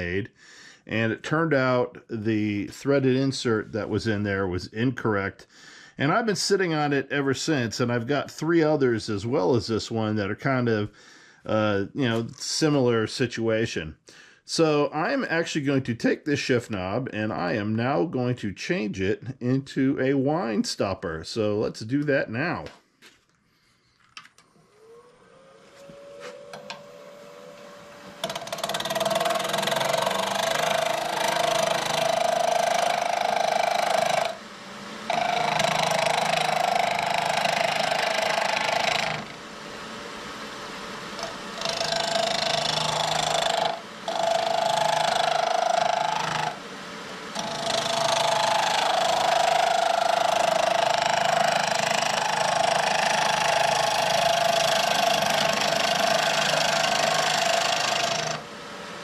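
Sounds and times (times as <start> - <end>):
wood lathe cutting wood: 24.6 - 59.0.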